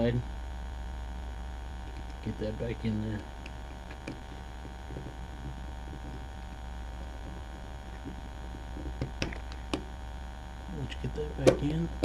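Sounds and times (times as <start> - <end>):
electrical mains hum: 0.0 - 12.0
handling noise: 3.4 - 10.0.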